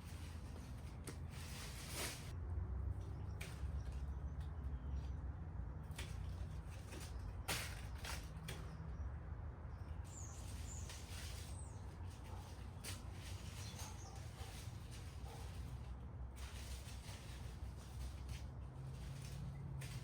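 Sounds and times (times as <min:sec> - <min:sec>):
birds chirping: 0:06.7 - 0:15.4.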